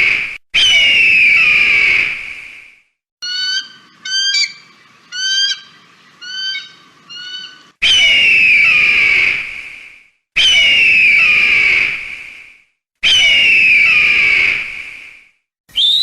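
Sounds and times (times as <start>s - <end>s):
kite short whistled calls: 15.7s - 16.0s.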